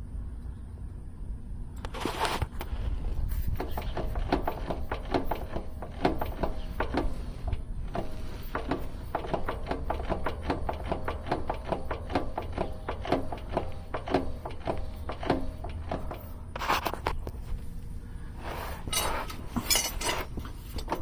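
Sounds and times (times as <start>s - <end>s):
road rumble in car: 0.0s - 18.4s
faint cabin hum: 0.0s - 21.0s.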